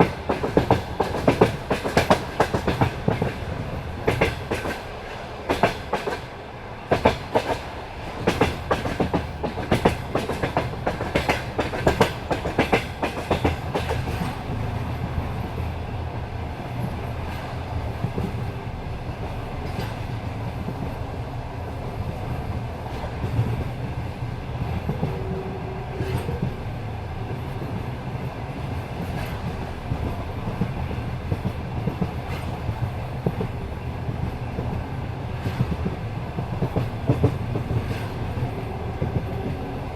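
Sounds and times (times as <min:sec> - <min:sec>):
train wheels clattering over rail joints: 0:00.0 - 0:06.3, 0:06.9 - 0:15.2, 0:25.9 - 0:39.6
train rolling rumble: 0:00.0 - 0:39.9.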